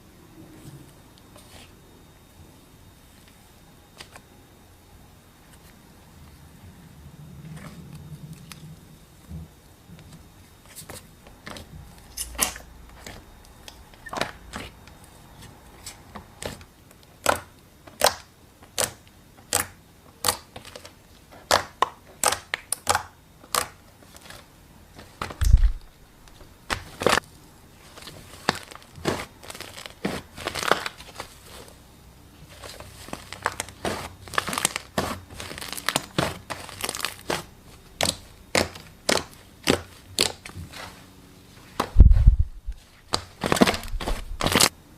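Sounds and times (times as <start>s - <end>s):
slime crackling and popping: 17.2s - 23.8s, 32.8s - 40.4s, 43.1s - 44.7s.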